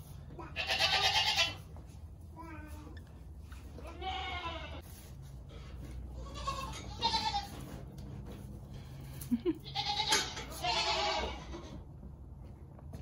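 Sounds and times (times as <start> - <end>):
goat kids bleating: 0.4 - 1.7, 3.8 - 4.8, 6.1 - 7.8, 9.6 - 11.8.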